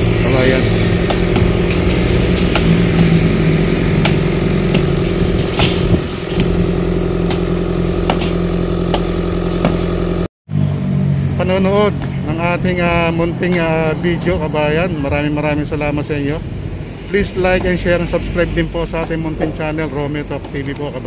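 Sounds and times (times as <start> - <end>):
sharp knocks and clanks: 0.0 - 10.3, 17.4 - 18.0
engine running: 0.0 - 21.0.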